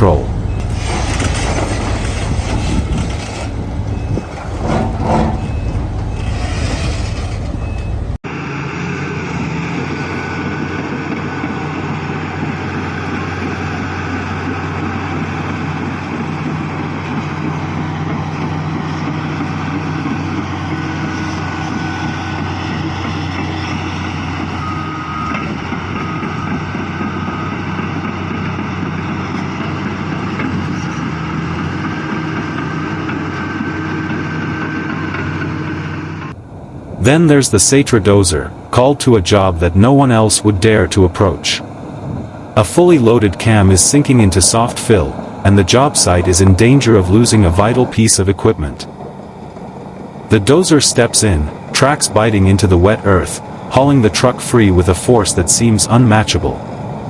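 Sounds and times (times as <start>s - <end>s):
heavy diesel engine running: 0.0s - 57.0s
short beeps: 5.4s - 6.3s, 24.6s - 26.6s.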